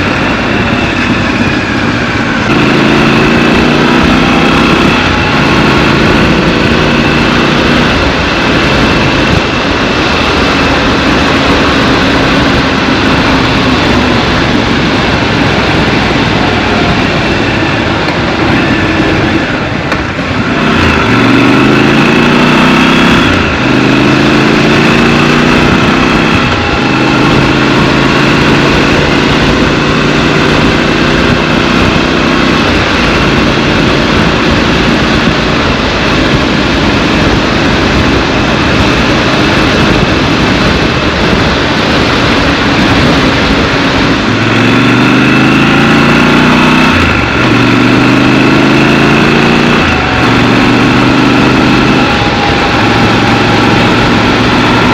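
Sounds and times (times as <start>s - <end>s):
motorcycle engine revving: 0.0s - 54.9s
wind noise on microphone: 0.0s - 54.9s.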